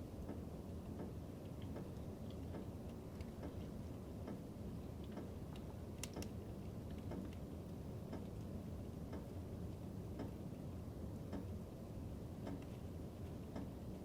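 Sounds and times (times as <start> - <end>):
fire crackling in fireplace: 0.2 - 10.9
sharp snaps of fire: 5.9 - 6.4.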